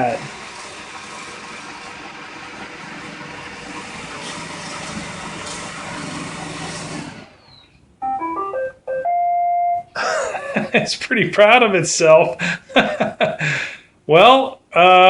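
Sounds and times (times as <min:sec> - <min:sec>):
robot vacuum running: 0:00.0 - 0:07.6
electronic beeping tune: 0:08.0 - 0:09.9.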